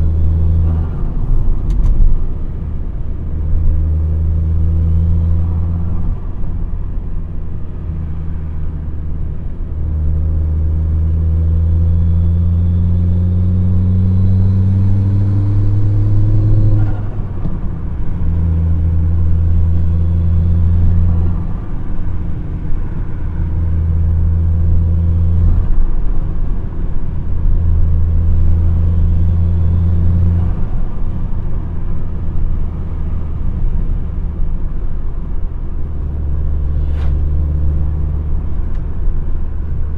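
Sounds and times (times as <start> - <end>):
turbocharged car engine accelerating: 9.8 - 26.0.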